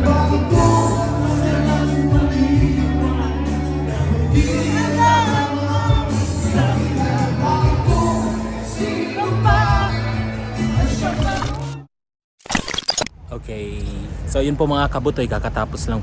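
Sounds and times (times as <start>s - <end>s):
live band playing: 0.0s - 11.8s
person singing melody: 0.0s - 11.8s.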